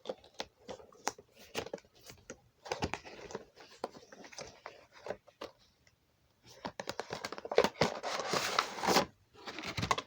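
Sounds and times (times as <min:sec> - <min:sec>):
packaging clicks taps and rustles: 0:00.0 - 0:05.6, 0:06.5 - 0:08.6.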